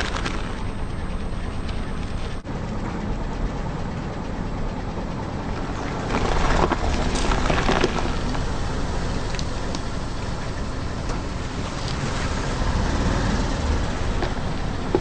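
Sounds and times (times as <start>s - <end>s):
object crunching under tyre: 0.0s - 0.9s, 6.0s - 8.6s
car engine and tyres rumbling: 0.0s - 15.0s.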